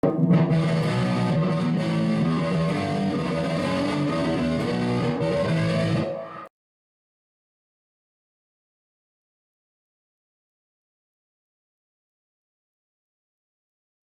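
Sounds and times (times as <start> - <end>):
distorted electric guitar music: 0.0 - 6.5.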